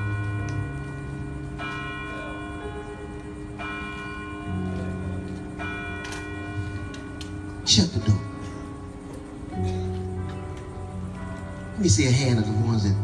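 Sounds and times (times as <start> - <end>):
organ chords: 0.0 - 13.0.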